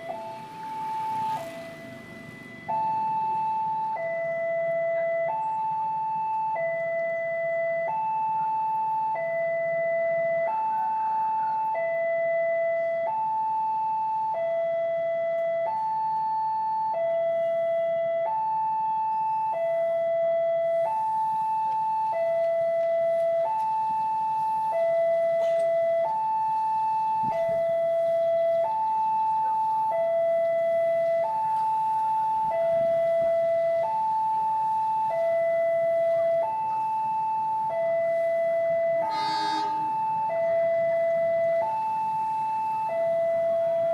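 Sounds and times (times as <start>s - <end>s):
two-tone level crossing alarm: 0.0s - 43.9s.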